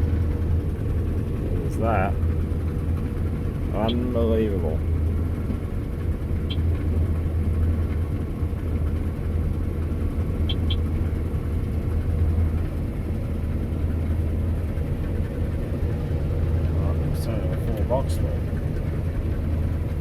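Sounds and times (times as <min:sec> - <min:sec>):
combine harvester running: 0:00.0 - 0:20.0.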